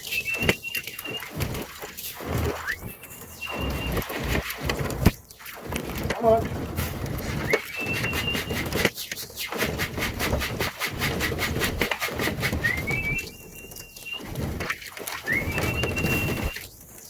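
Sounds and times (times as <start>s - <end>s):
thin high whistle-like tone: 0.0s - 4.7s, 7.4s - 8.8s, 12.6s - 16.6s.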